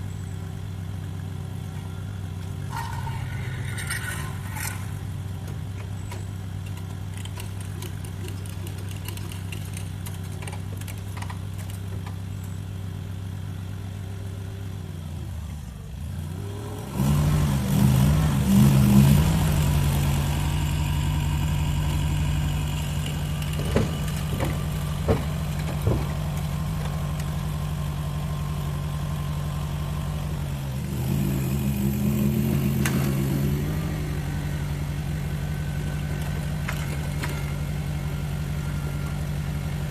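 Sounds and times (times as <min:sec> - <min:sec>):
small engine running and revving: 0:02.6 - 0:05.3, 0:13.3 - 0:26.2, 0:27.1 - 0:39.9
short knocks: 0:23.4 - 0:26.5.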